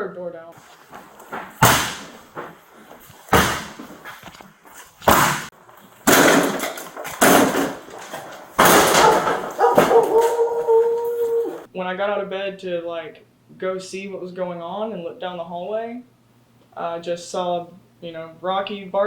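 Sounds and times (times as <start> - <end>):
crashing bursts: 0.6 - 11.0
door slamming blows: 1.3 - 2.5, 3.3 - 4.0, 5.0 - 11.7.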